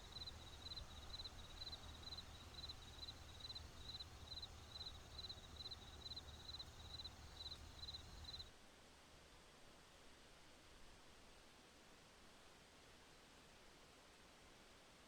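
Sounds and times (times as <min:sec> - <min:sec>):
cricket chirping: 0:00.0 - 0:08.5.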